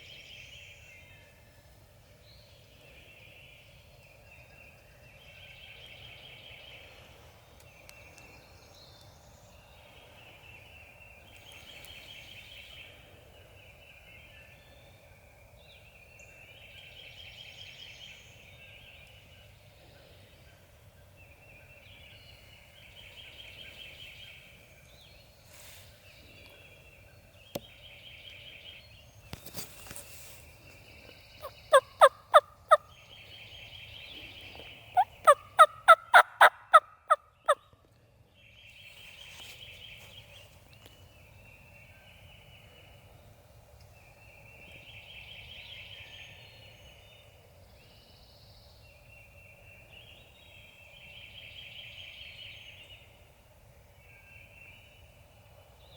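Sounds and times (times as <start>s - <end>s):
turkey yelps: 31.7s - 32.8s, 35.0s - 37.2s
distant wild turkey gobbles: 34.6s - 37.6s.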